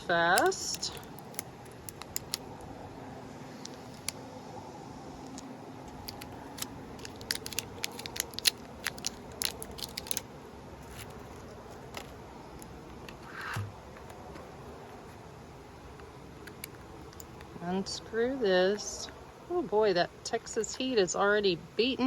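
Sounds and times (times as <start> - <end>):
packaging clicking and crackling: 0.3 - 2.7, 3.4 - 4.3, 5.2 - 15.2, 15.9 - 17.5
packaging rustle: 0.3 - 2.7, 3.4 - 4.3, 5.2 - 15.2.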